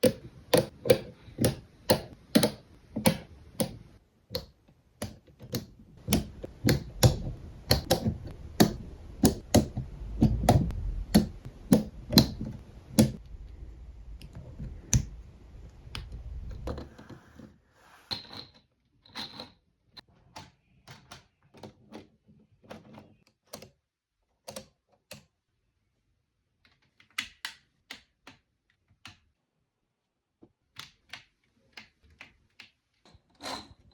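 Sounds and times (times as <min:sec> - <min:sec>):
low hum: 0:07.0 - 0:16.9.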